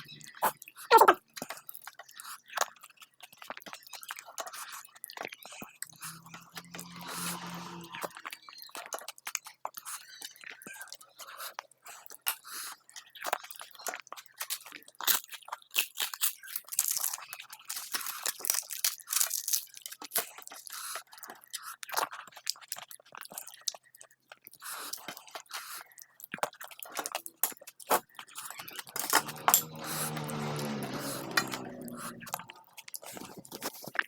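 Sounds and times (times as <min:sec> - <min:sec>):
person crunching fried food: 0:08.2 - 0:29.0.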